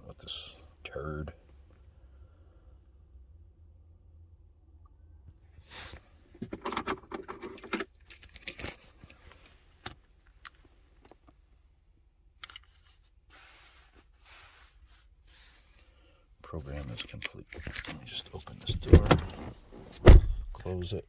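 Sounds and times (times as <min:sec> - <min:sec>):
steady low hum: 0:18.4 - 0:21.0.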